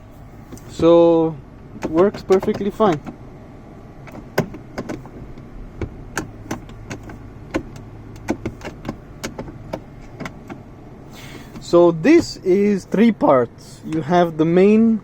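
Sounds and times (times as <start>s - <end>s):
low steady hum: 0.0s - 15.0s
clicks and knocks from car console: 1.8s - 3.2s, 4.0s - 10.6s, 11.5s - 12.4s.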